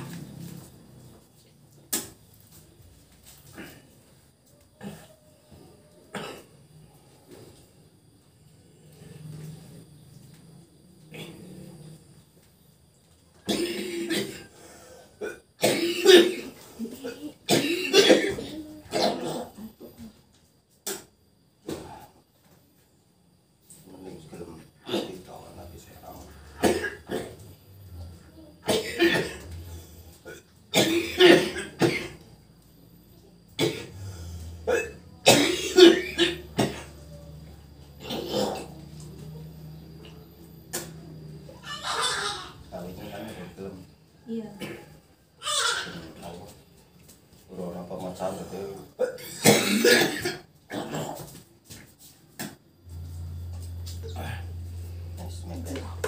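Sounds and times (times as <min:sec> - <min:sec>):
person coughing: 0:06.1 - 0:06.5, 0:13.5 - 0:14.5, 0:15.2 - 0:19.7, 0:26.6 - 0:27.4, 0:28.6 - 0:29.5, 0:30.3 - 0:32.2, 0:34.7 - 0:36.9, 0:49.0 - 0:51.2.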